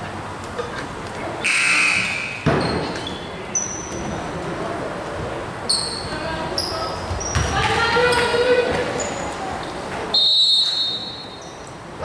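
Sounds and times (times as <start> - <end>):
voices in echoing gym: 0.0 - 12.0
sneakers squeaking: 1.4 - 4.3, 5.6 - 11.8.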